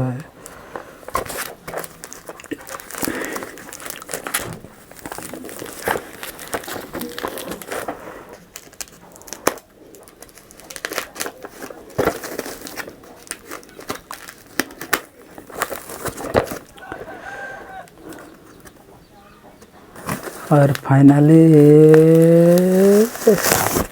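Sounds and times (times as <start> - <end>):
packaging crinkling and tearing: 0.4 - 18.8, 19.9 - 23.9.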